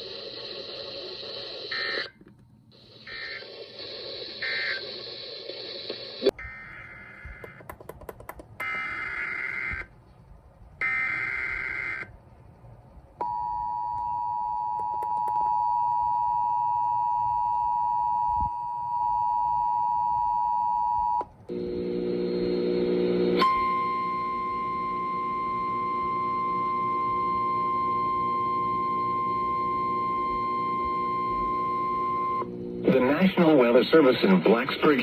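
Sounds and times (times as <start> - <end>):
buzzy digital data bursts: 3.0 - 6.4.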